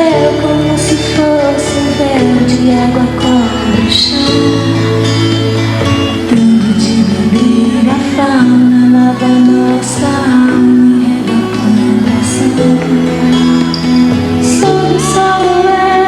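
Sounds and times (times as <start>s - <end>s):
concert band music: 3.2s - 7.7s.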